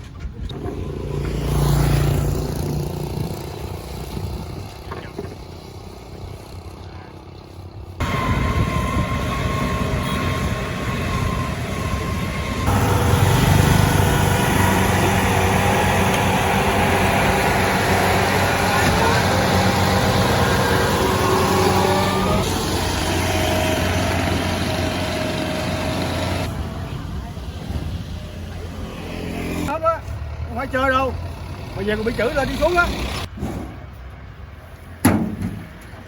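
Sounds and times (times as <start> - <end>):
engine running: 0.1 - 36.0.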